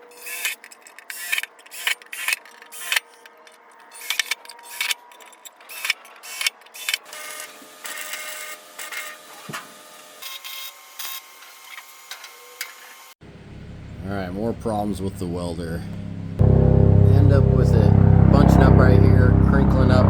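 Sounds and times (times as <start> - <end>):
faint steady hum: 13.2 - 20.0.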